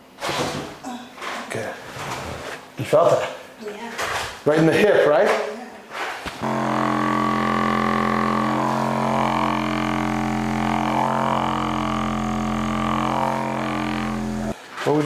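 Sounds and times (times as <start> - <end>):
low musical drone: 6.4 - 14.6.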